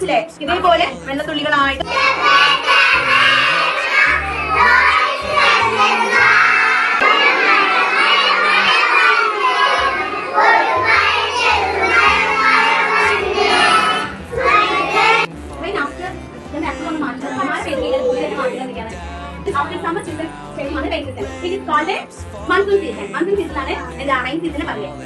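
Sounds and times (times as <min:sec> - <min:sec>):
children shouting and chattering: 0:01.8 - 0:15.3, 0:17.3 - 0:18.8.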